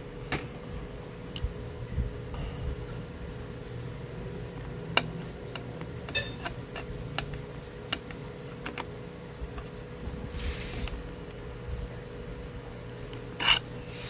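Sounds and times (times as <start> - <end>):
low steady hum: 0.0 - 14.0
metal tools clicking and tapping: 4.9 - 8.9, 13.1 - 13.7
metal part ringing: 6.1 - 6.9.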